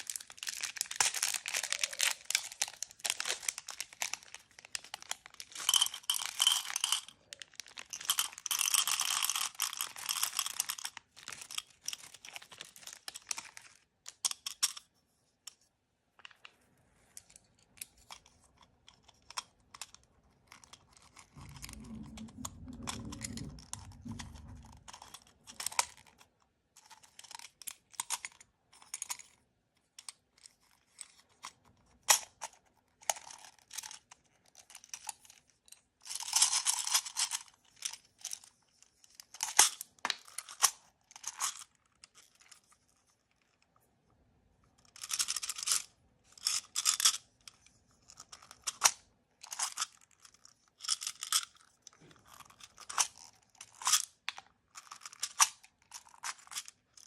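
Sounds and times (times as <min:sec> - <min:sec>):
plastic packaging crinkling and tearing: 0:00.0 - 0:13.8
small clicks and rustles: 0:00.0 - 0:57.0.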